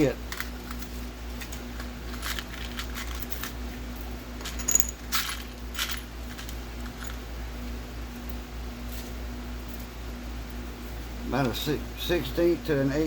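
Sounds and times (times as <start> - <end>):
metal screws clinking: 2.0 - 3.6, 4.4 - 7.2.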